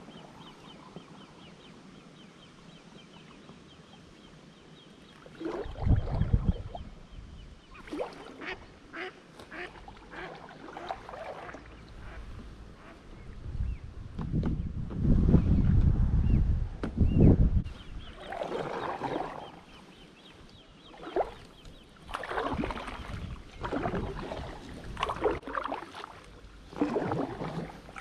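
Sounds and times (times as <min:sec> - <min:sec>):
ducks quacking: 0:08.3 - 0:13.0.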